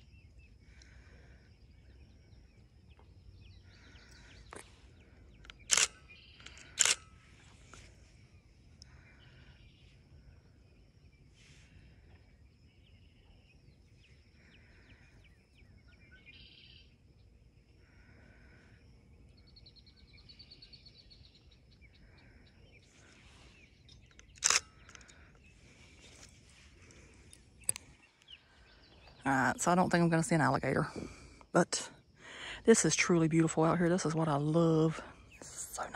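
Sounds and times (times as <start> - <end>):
bird calls and chirps: 0.0 - 8.2, 11.1 - 17.0, 19.3 - 30.1.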